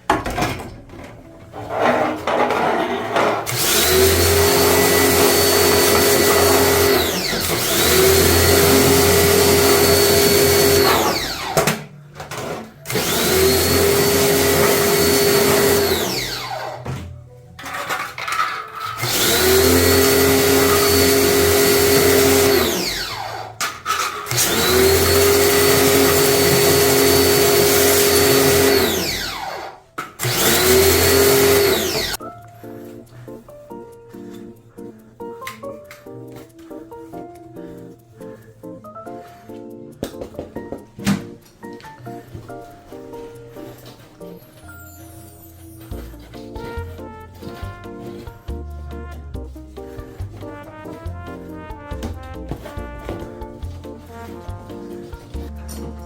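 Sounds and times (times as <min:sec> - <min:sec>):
small electric motor whining: 0:03.5 - 0:11.7, 0:12.9 - 0:16.8, 0:18.9 - 0:23.6, 0:24.2 - 0:32.2.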